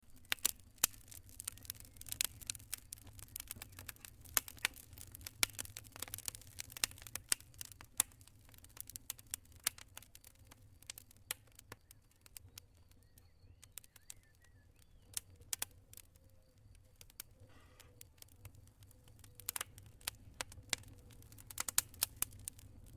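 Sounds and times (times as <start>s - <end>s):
campfire crackling and popping: 0.0s - 22.9s.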